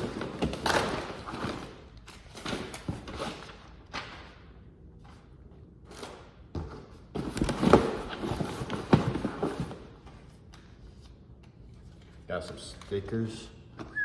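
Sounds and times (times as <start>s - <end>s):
box and packing rustling: 0.0s - 4.1s, 5.9s - 10.3s.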